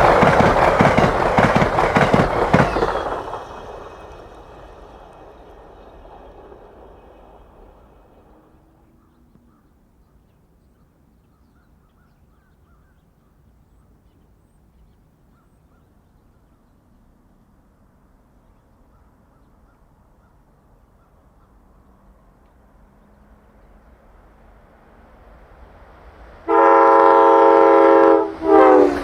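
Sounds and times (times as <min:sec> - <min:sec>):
passing train: 0:00.0 - 0:12.4, 0:13.3 - 0:29.0.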